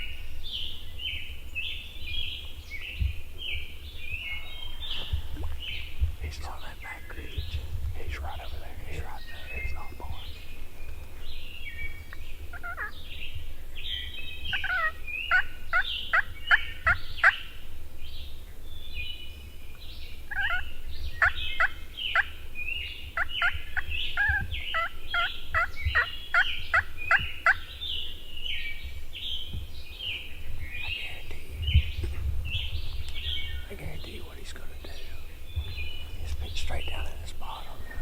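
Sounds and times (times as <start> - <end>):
songbirds chirping: 0.0 - 38.0
wild turkey yelping: 12.1 - 13.2, 14.5 - 17.6, 20.3 - 22.5, 23.1 - 28.2.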